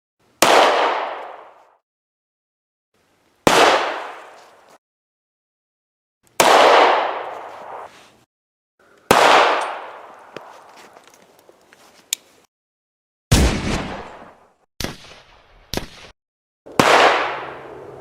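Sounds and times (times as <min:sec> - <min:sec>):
pistol shots echoing: 0:00.4 - 0:01.6, 0:03.5 - 0:04.3, 0:06.4 - 0:07.9, 0:09.1 - 0:10.1, 0:16.7 - 0:17.8.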